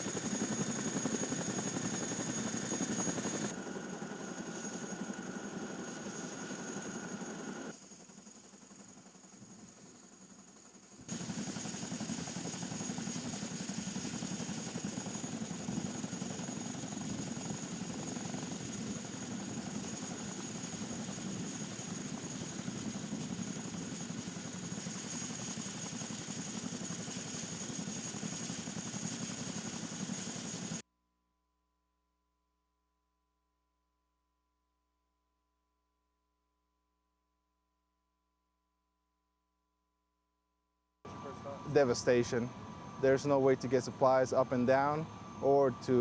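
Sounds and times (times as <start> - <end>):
helicopter rotor noise: 0.0 - 30.8, 41.1 - 46.0
high turbine whine: 0.0 - 30.8, 41.1 - 46.0.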